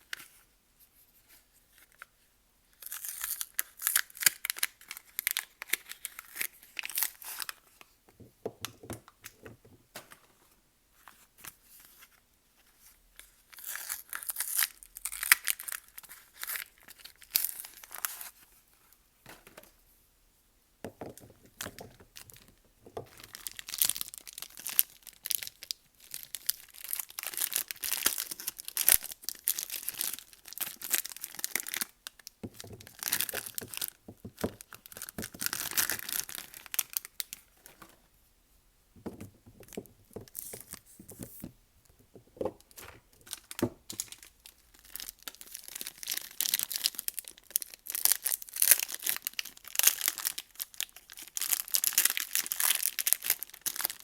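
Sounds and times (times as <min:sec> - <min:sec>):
wrapping torn and crinkled: 0:02.8 - 0:07.8, 0:13.2 - 0:18.4, 0:23.1 - 0:38.1, 0:42.7 - 0:54.0.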